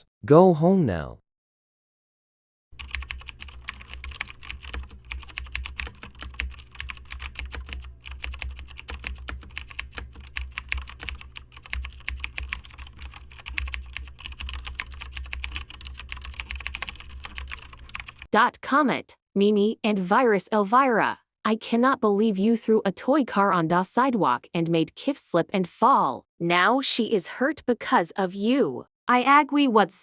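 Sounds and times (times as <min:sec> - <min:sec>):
rapid keyboard typing: 0:02.8 - 0:18.3.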